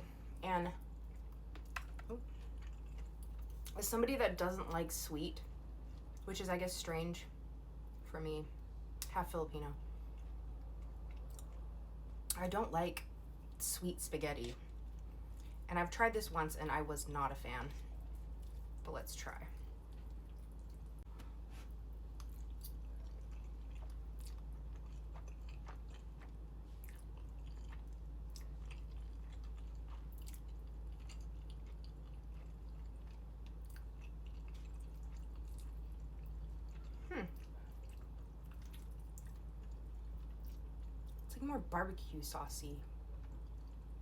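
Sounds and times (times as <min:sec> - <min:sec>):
person chewing food: 0:00.0 - 0:03.8, 0:09.9 - 0:12.1, 0:14.6 - 0:15.7, 0:17.7 - 0:18.8, 0:19.6 - 0:41.3, 0:43.0 - 0:44.0
low hum: 0:00.0 - 0:44.0.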